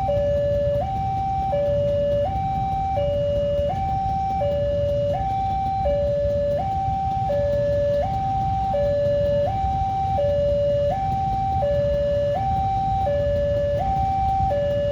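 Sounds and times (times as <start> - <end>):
two-tone level crossing alarm: 0.0 - 14.9.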